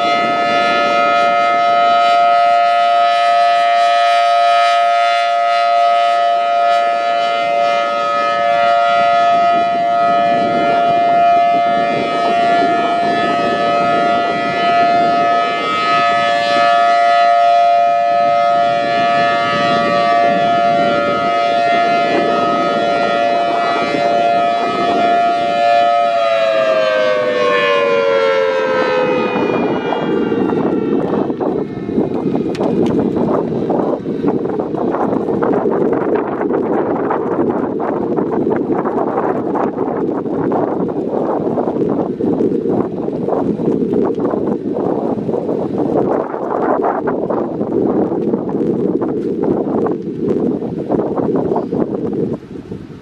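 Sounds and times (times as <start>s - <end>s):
warning siren alert tone: 0.0s - 35.4s
wind buffeting microphone: 0.0s - 53.0s.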